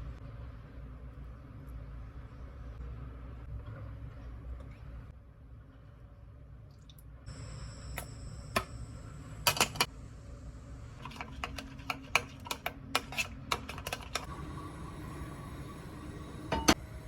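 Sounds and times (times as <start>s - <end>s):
kitchen utensils and dishes clinking: 9.5s - 9.9s, 11.0s - 14.3s, 16.5s - 16.8s.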